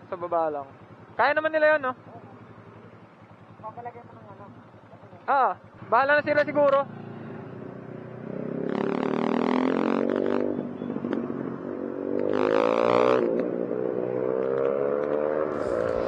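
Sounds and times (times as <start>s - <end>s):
motorcycle engine revving: 0.6s - 16.0s
wind noise: 15.5s - 16.0s.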